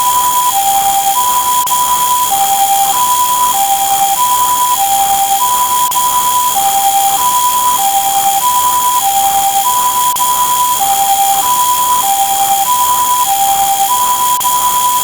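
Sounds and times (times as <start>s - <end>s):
two-tone ambulance siren: 0.0s - 15.0s.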